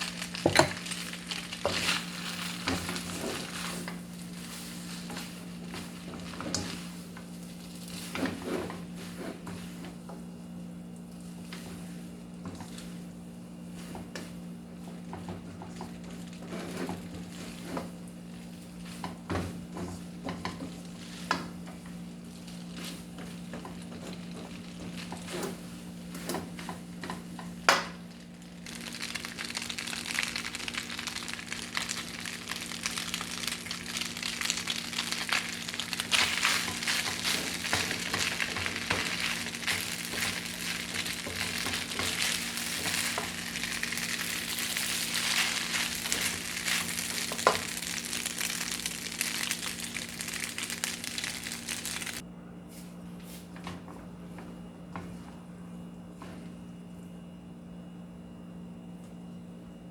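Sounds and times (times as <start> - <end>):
food frying in a pan: 0.0 - 9.8, 13.9 - 52.2
loud sizzling: 28.2 - 52.2.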